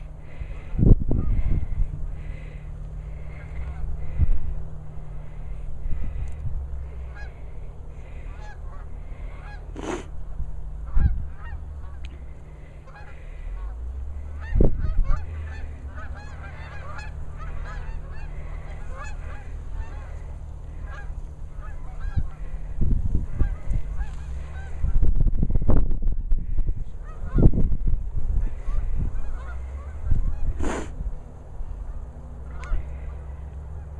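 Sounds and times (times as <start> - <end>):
geese honking: 0.0 - 10.1, 10.7 - 25.1, 26.4 - 33.9.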